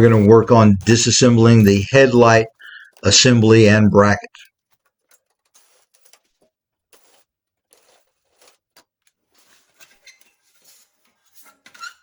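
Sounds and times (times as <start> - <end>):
small metal parts handled: 0.0 - 3.7, 4.4 - 12.0.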